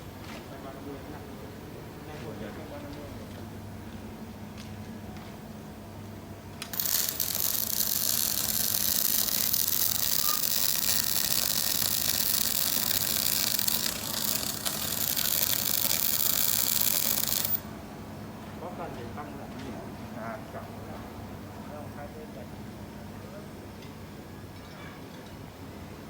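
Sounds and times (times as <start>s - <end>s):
welder sizzling hiss: 6.7s - 17.6s.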